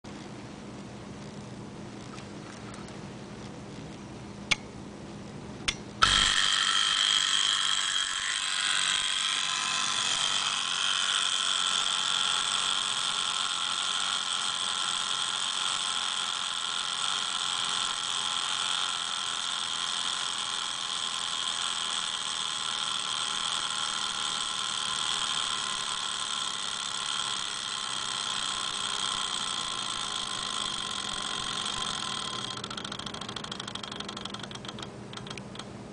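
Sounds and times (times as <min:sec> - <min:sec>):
high alarm buzz: 0:06.0 - 0:12.7
clock clicks: 0:29.3 - 0:35.7.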